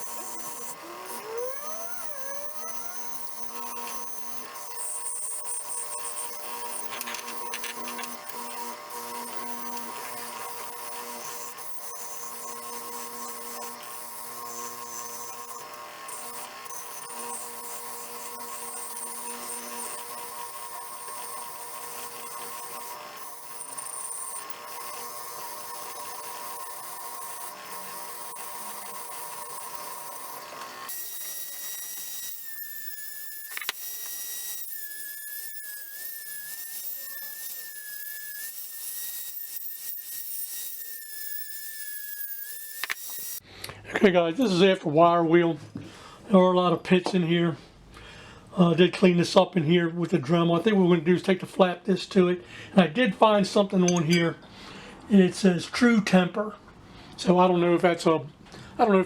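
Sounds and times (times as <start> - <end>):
rotary power tool whining: 0.0 - 43.4.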